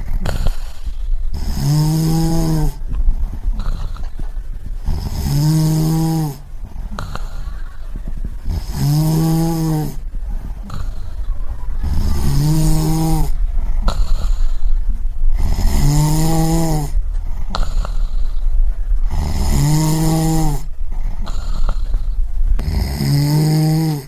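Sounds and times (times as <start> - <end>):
breathing: 0.0 - 8.8, 13.3 - 15.8, 16.8 - 19.6, 20.6 - 23.1
person snoring: 0.0 - 24.0.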